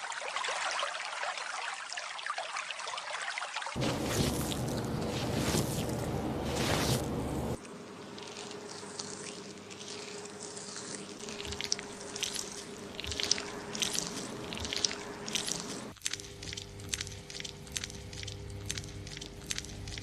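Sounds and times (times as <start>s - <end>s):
running water: 0.0s - 5.8s, 8.1s - 16.0s
fingers scrubbing lathered hair: 3.8s - 20.0s.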